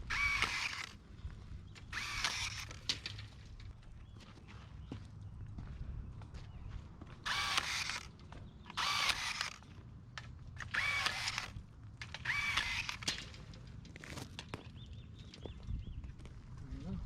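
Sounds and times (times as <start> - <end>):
rebar tool motor whirring: 0.0 - 1.0, 1.8 - 3.3, 7.2 - 13.5.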